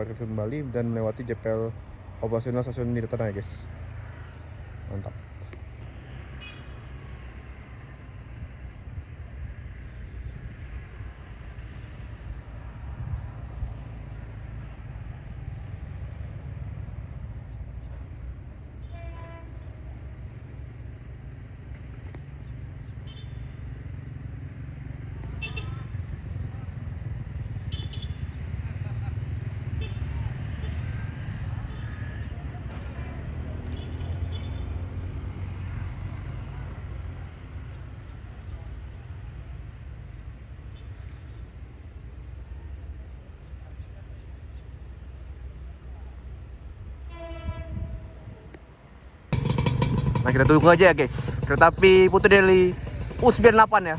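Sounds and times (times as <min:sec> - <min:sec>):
road traffic rumble: 0:00.0 - 0:53.9
short vehicle horn toot: 0:06.4 - 0:06.7, 0:18.8 - 0:19.6, 0:23.0 - 0:23.4, 0:47.1 - 0:48.0
low vehicle rumble: 0:49.3 - 0:53.9.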